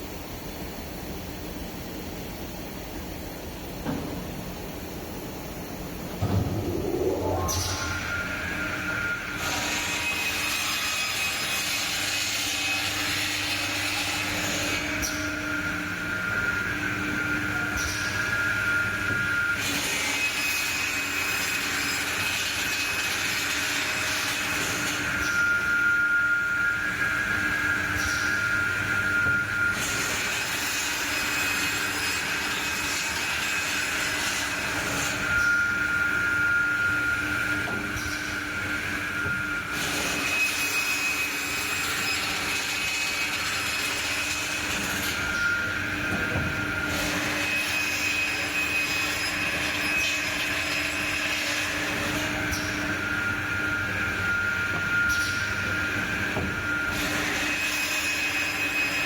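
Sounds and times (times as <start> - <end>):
steady high whine: 4.2 - 10.4.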